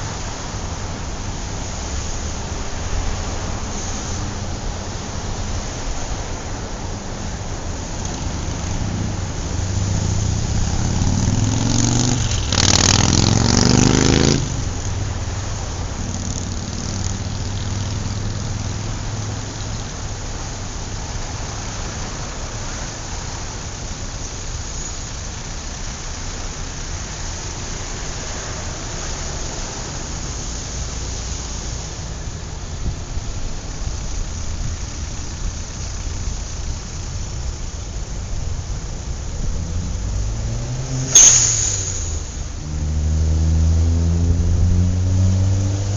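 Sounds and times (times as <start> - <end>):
vehicle accelerating nearby: 0.0 - 23.8, 34.7 - 45.9
traffic rumble: 0.0 - 45.9.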